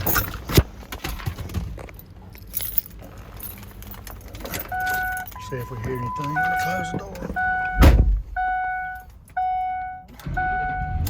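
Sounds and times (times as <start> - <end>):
car keys jangling: 0.0 - 7.8, 8.7 - 9.8
vehicle electronic chime: 4.6 - 11.0.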